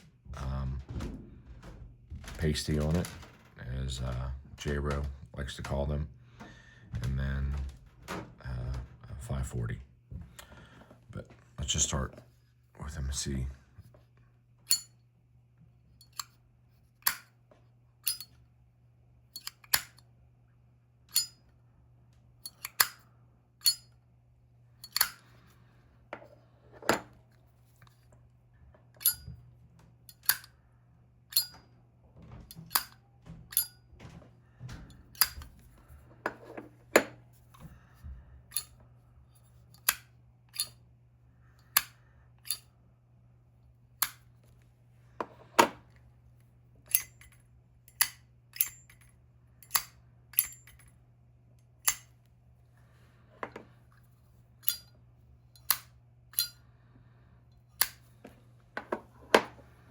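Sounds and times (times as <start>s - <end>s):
metal lighter lids clicking: 14.7s - 14.9s, 17.0s - 17.3s, 18.0s - 18.3s, 19.4s - 20.0s, 21.1s - 21.4s, 22.4s - 23.0s, 23.6s - 23.8s, 24.8s - 25.2s, 29.0s - 29.2s, 30.1s - 30.5s, 31.3s - 31.5s, 39.8s - 40.8s, 41.7s - 42.6s, 46.9s - 49.0s, 49.6s - 50.8s, 51.8s - 52.1s, 54.6s - 54.9s, 55.6s - 56.6s, 57.8s - 58.0s.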